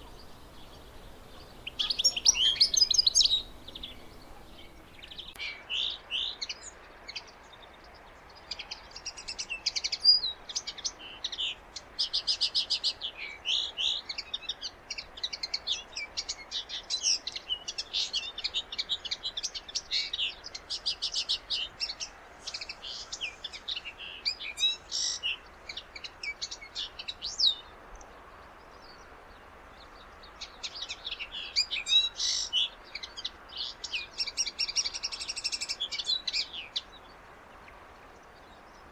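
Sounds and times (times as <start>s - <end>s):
finch twittering song: 0.0s - 7.7s.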